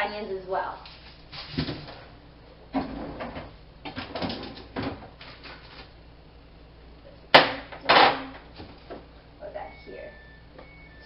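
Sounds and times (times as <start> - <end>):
kitchen items rustling: 0.8 - 2.2, 2.8 - 6.0.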